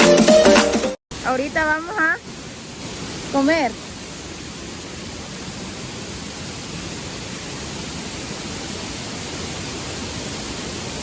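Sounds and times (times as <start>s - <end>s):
river water rushing over rocks: 2.2s - 11.0s.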